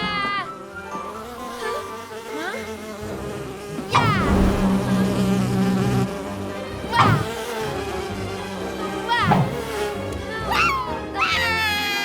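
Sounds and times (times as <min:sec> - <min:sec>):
buzzing drone: 0:00.0 - 0:11.1
high squeaky swoops: 0:03.9 - 0:04.8.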